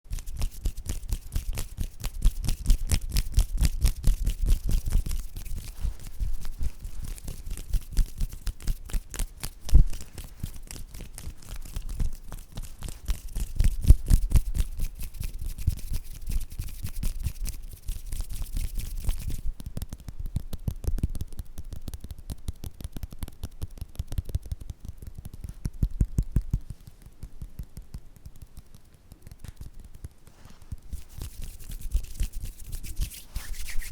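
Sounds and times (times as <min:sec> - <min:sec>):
soft clicks taps and rustles: 0:00.2 - 0:33.1
low microphone thumps: 0:04.4 - 0:10.4.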